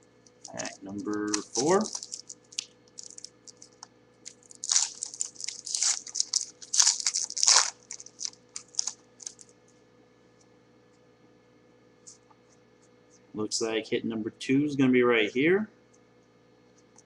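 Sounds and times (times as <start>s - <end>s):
foil pack crinkling and tearing: 0.4s - 9.5s.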